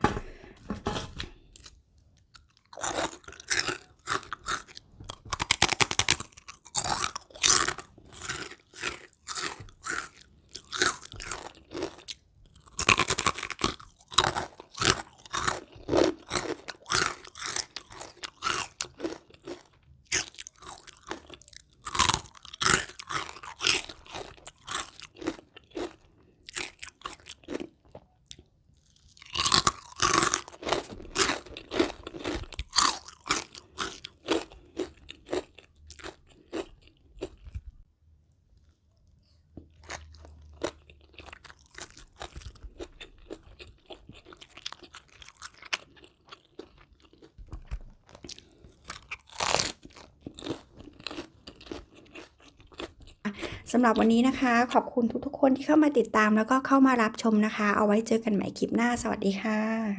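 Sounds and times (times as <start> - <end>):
crunchy fried chicken chewing: 0.0 - 37.8, 38.5 - 54.1.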